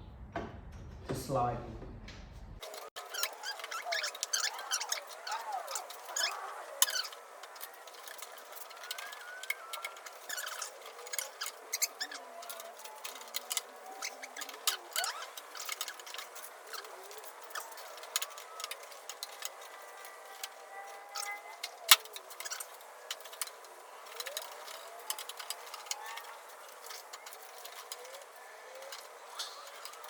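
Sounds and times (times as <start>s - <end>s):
metal scraping against steel frame: 2.6s - 30.0s.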